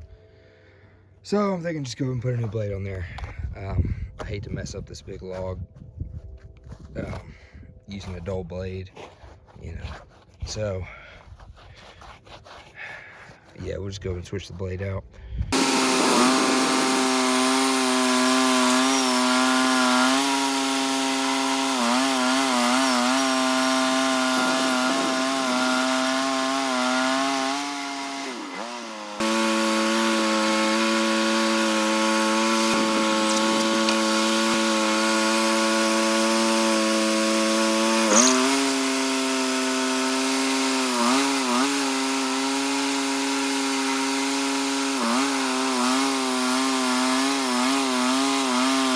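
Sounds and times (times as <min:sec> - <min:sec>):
sawmill engine sawing log: 0:15.5 - 0:48.9.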